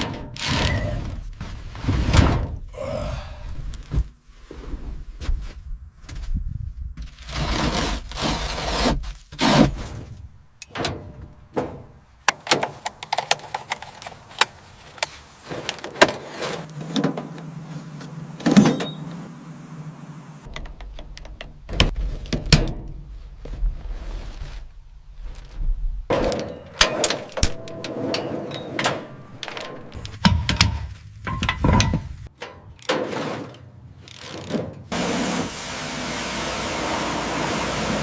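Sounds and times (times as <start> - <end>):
hiss: 35.0 - 38.0.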